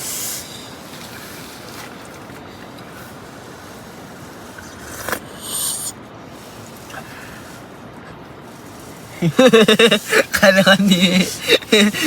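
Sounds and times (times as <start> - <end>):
steady background hiss: 0.0 - 12.0
short high hissing burst: 4.8 - 6.6.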